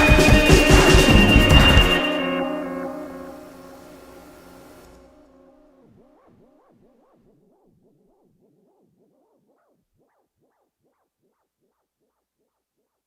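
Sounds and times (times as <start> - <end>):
electronic warble: 0.0 - 7.2.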